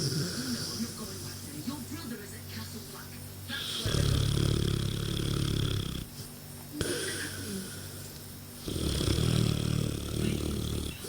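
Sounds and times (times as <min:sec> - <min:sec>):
dog snoring: 0:00.0 - 0:01.5, 0:03.5 - 0:11.0.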